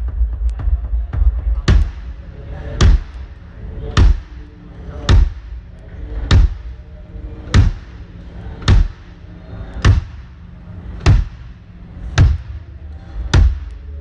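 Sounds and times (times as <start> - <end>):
drum thumps: 0.0 - 2.2, 2.8 - 3.2, 4.0 - 4.4, 5.1 - 5.6, 6.3 - 6.8, 7.5 - 8.0, 8.7 - 9.1, 9.8 - 10.3, 11.0 - 11.6, 12.2 - 12.6, 13.3 - 13.8.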